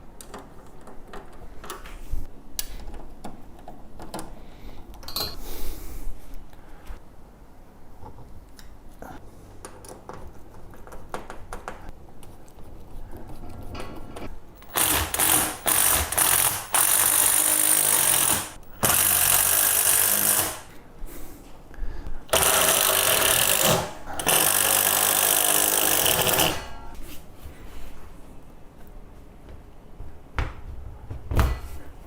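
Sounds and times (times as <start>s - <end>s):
power drill running: 14.6s - 20.7s, 22.3s - 26.7s.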